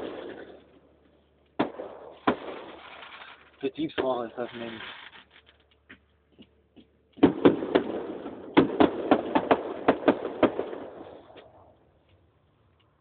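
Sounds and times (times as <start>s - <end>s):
fireworks bangs: 0.0s - 0.8s, 1.6s - 5.4s, 7.2s - 11.7s.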